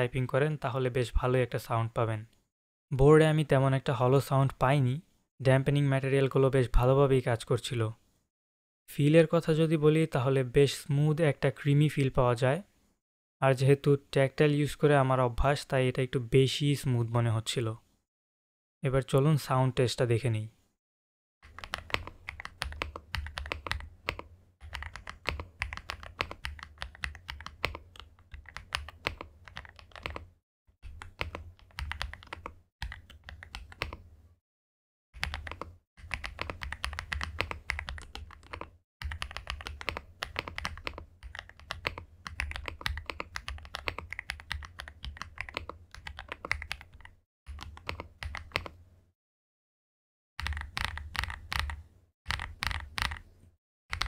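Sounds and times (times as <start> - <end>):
fast typing on mechanical keyboard: 21.4 - 34.0, 35.2 - 48.7, 50.4 - 53.2.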